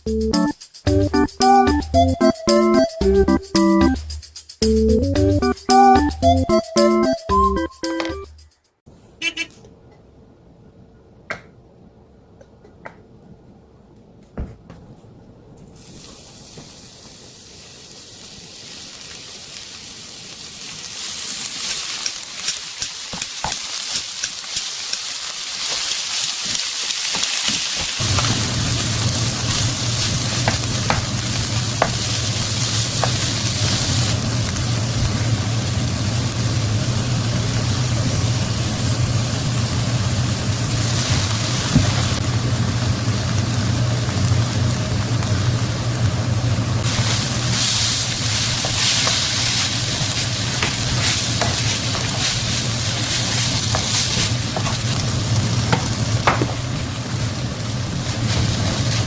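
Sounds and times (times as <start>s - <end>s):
food sizzling in a frying pan: 15.8s - 59.0s.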